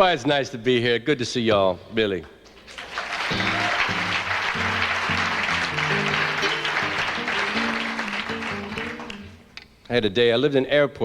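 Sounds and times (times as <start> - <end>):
audience applauding and cheering: 2.6 - 9.5.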